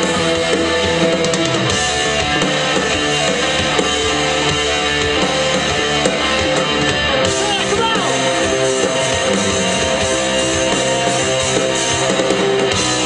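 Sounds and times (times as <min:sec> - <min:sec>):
bass guitar: 0:00.0 - 0:13.0
distorted electric guitar: 0:00.0 - 0:13.0
drums: 0:00.0 - 0:13.0.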